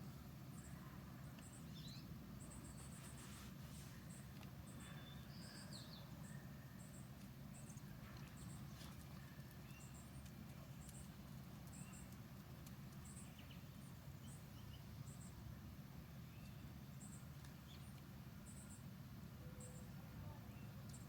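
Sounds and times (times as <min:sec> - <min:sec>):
faint bird chirps: 0:00.6 - 0:12.2, 0:19.4 - 0:21.0
light clicks: 0:07.2 - 0:13.2.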